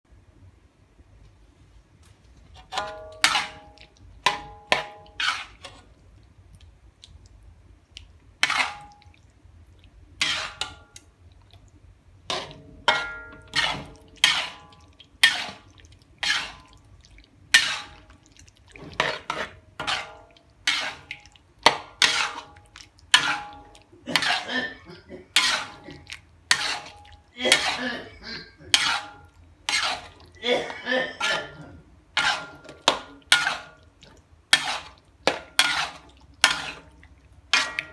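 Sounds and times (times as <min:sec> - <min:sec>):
person coughing: 0:24.1 - 0:26.0, 0:27.4 - 0:28.8, 0:30.4 - 0:31.8.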